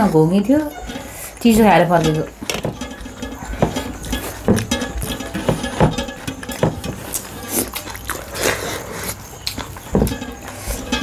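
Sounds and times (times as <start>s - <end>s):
close-up eating slurps and smacks: 2.3s - 11.0s.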